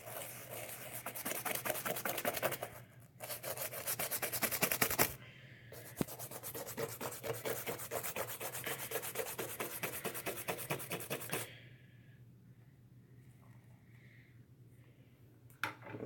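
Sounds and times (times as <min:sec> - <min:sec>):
scrub brush scrubbing leather: 0:00.0 - 0:05.2, 0:05.9 - 0:11.4.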